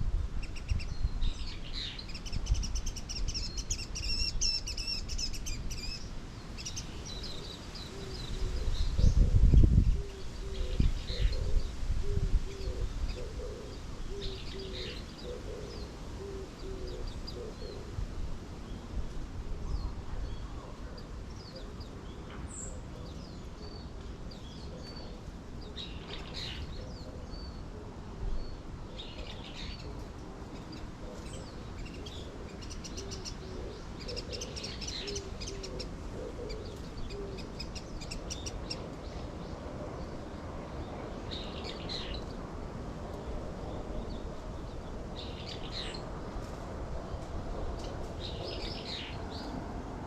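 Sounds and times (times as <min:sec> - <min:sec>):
low background noise: 0:00.0 - 0:50.0
low bird calls: 0:00.4 - 0:18.1, 0:24.4 - 0:42.3.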